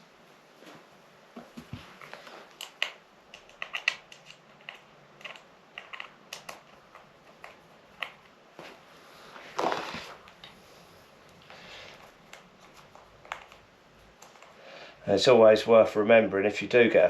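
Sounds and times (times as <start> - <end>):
small tools clicking and tapping: 1.7 - 8.4, 12.0 - 14.6.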